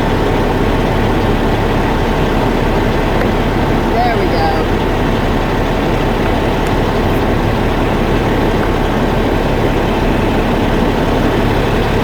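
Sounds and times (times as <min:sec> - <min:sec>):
diesel truck engine idling: 0:00.0 - 0:12.0.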